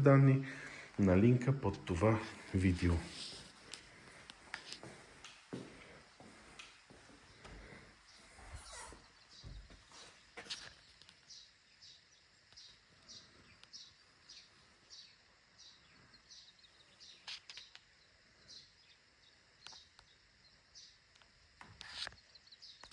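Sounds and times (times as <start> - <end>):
bird chirps: 8.1 - 21.0.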